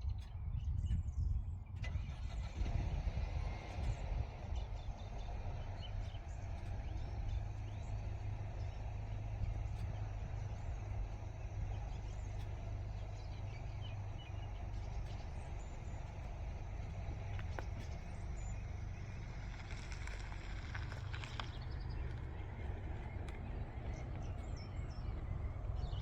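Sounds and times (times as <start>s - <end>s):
steady low rumble: 0.0s - 26.0s.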